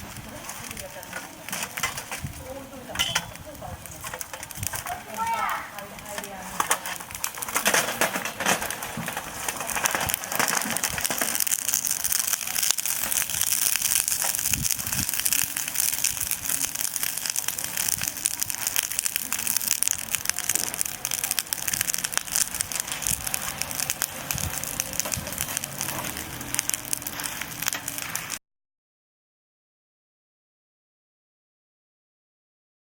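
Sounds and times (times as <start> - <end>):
wood fire crackling and popping: 0.0 - 28.4.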